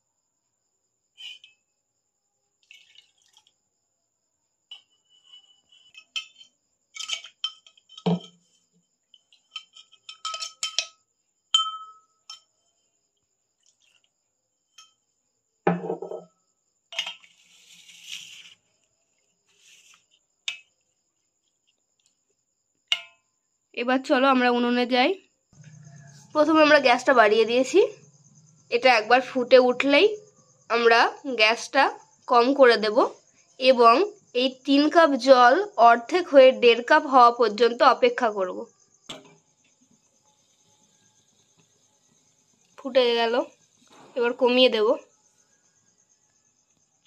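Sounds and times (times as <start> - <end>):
kitchen vessels clinking: 9.5 - 10.9.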